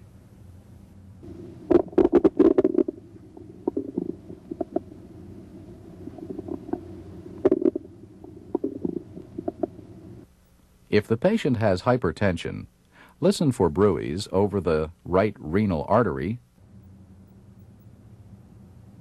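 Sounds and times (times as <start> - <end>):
bowel gurgles and clicks: 1.7 - 3.0, 3.6 - 4.9, 6.1 - 9.8.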